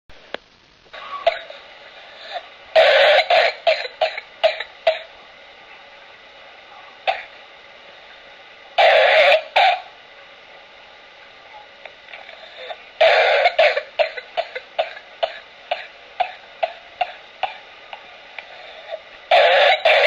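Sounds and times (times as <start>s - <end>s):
infant coughing: 2.3s - 5.1s, 8.8s - 9.9s, 12.6s - 17.6s, 19.3s - 20.0s.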